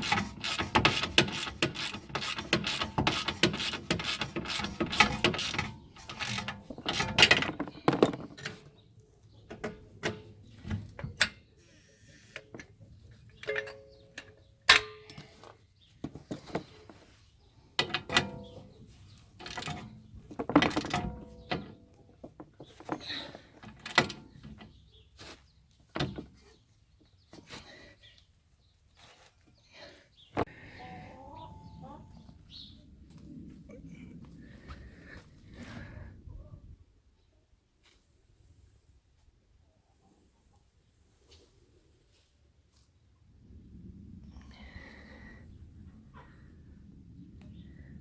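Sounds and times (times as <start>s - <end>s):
tools clicking and clanking on metal: 0.0s - 8.8s, 9.5s - 11.5s, 12.4s - 15.5s, 17.8s - 18.7s, 19.4s - 24.8s.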